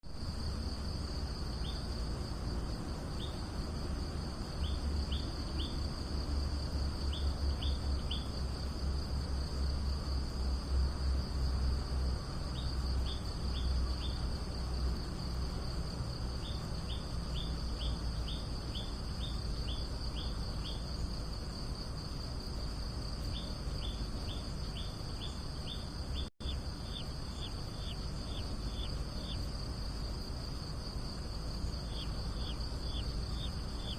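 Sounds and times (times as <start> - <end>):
insects droning: 0.0 - 33.9.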